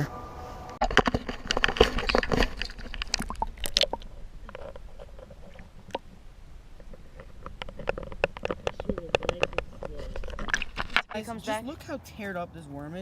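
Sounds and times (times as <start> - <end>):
underwater water sloshing: 0.9 - 11.1.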